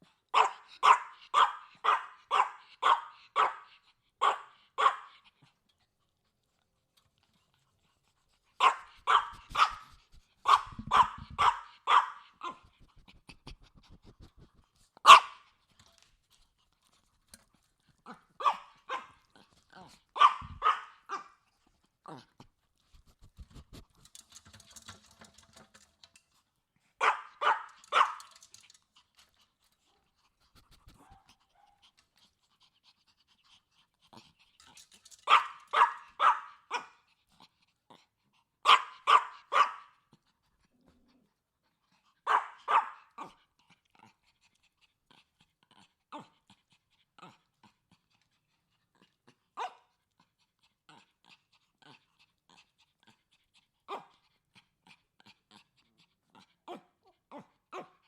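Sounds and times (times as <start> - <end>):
small dog yapping: 0.3 - 5.1, 8.6 - 12.7, 15.0 - 15.4, 18.4 - 21.4, 27.0 - 28.8, 35.0 - 37.0, 38.6 - 39.9, 42.3 - 43.4.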